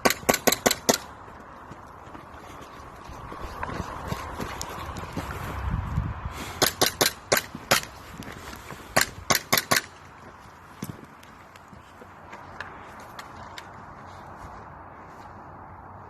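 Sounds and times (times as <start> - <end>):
low rumble of movement: 1.1 - 6.5.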